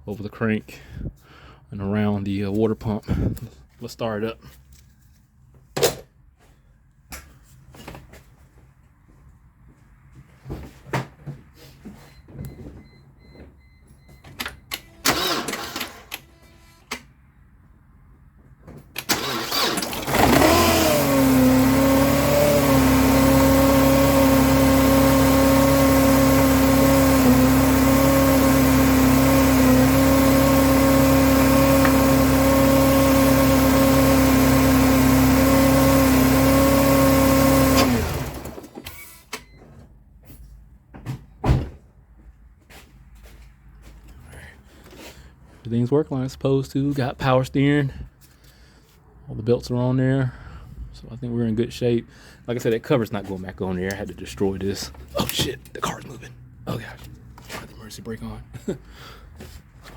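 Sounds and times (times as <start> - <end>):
car engine starting and idling: 14.3 - 17.2, 18.9 - 39.4
engine whine: 19.0 - 39.2.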